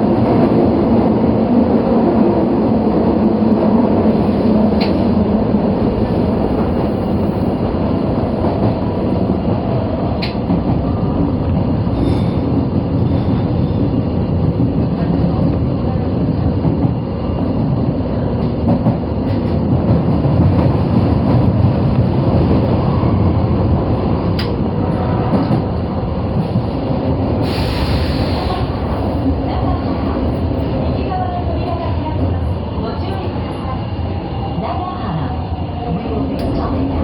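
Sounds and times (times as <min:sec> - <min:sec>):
subway train wheels rumbling: 0:00.0 - 0:37.0
click: 0:04.8 - 0:05.0, 0:10.2 - 0:10.4, 0:24.4 - 0:24.6.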